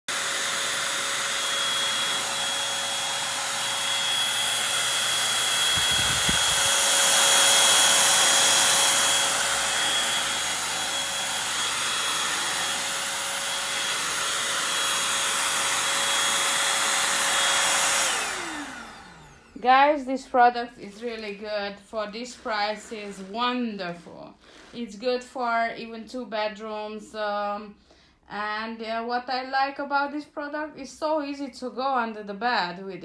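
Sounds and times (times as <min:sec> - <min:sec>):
stick vacuum running: 0:00.1 - 0:19.6.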